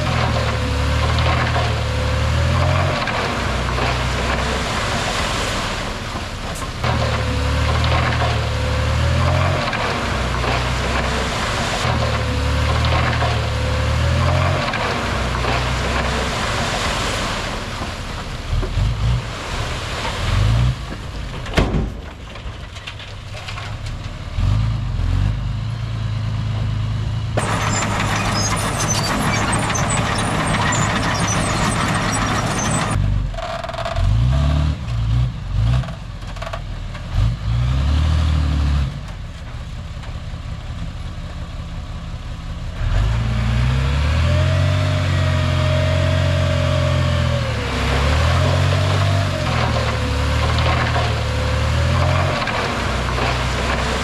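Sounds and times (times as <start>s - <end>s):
heavy diesel engines revving: 0.0s - 21.2s, 27.1s - 33.1s, 42.8s - 54.0s.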